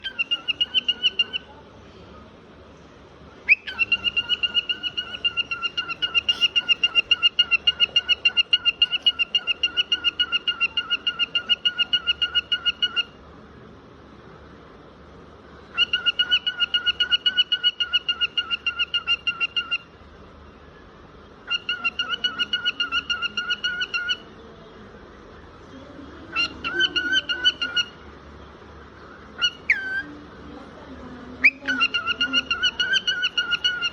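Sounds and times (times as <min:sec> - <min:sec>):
cockatiel calling: 0:00.0 - 0:01.5, 0:03.4 - 0:13.2, 0:15.7 - 0:19.9, 0:21.4 - 0:24.2, 0:26.3 - 0:28.0, 0:29.4 - 0:30.1, 0:31.4 - 0:33.9.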